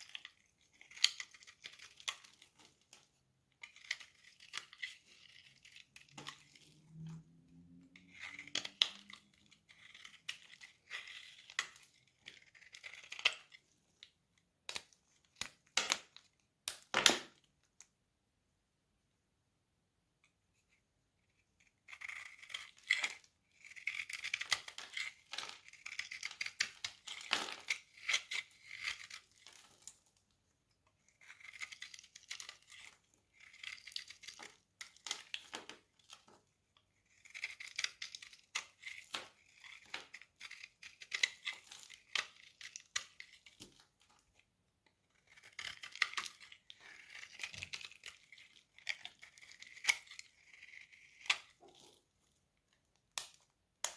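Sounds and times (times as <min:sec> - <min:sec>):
knife scraping dry soap: 0:00.0 - 0:16.2, 0:20.2 - 0:53.9.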